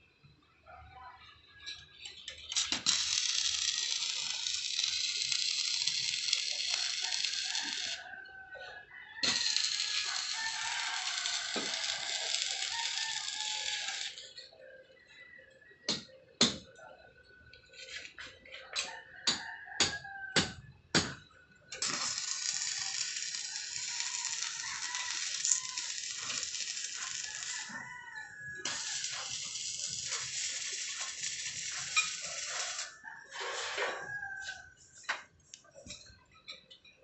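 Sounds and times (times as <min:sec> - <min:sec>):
arc welding crackling sizzle: 0:02.3 - 0:08.0, 0:09.2 - 0:14.3, 0:21.8 - 0:27.9, 0:28.6 - 0:32.9.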